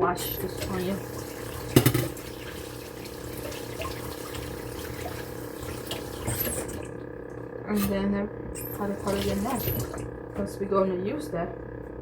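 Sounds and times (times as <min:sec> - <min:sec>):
tap running into sink: 0:00.3 - 0:06.9.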